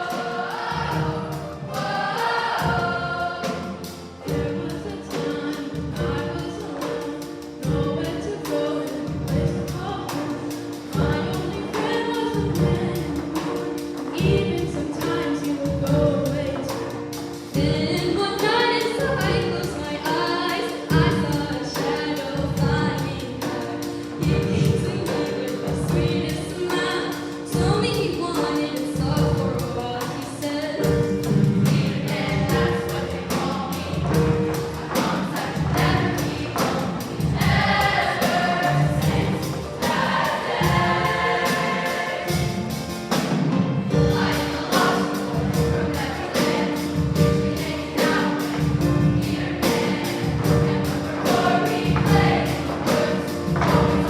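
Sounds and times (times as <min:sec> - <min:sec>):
choir singing in parts: 0:00.0 - 0:15.5, 0:31.3 - 0:54.0
instrumental accompaniment: 0:00.0 - 0:54.0.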